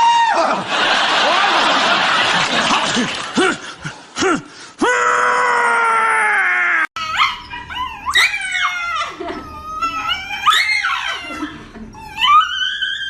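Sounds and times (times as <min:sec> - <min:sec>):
dog howling and whining: 0:07.0 - 0:13.0.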